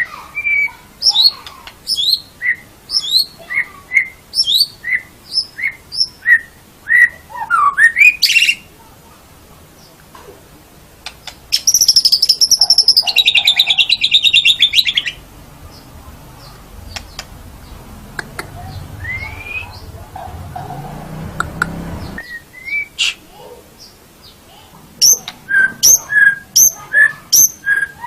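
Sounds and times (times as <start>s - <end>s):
bird trilling: 0.0s - 8.7s, 11.2s - 23.3s, 25.0s - 28.0s
bird clicks: 11.0s - 11.7s, 16.9s - 17.4s, 18.1s - 18.6s, 21.4s - 21.8s
rising whistled bird notes: 19.0s - 19.9s, 22.2s - 23.2s, 25.0s - 28.0s.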